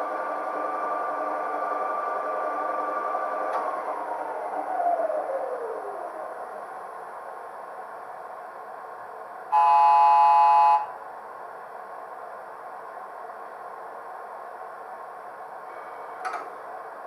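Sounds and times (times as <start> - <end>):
train whistle chord: 9.5 - 11.0.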